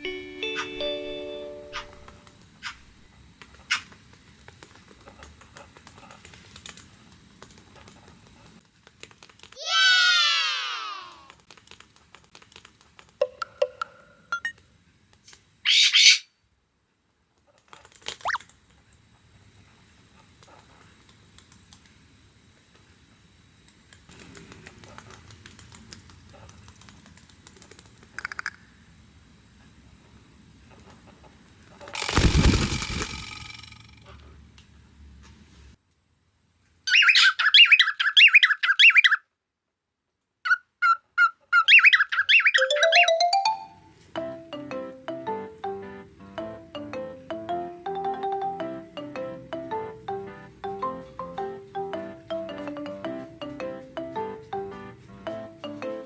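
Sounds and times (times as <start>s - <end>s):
cockatiel warbling whistled song: 1.6s - 2.8s, 41.6s - 43.1s
cockatiel harsh squawk: 15.7s - 16.3s, 36.9s - 39.2s.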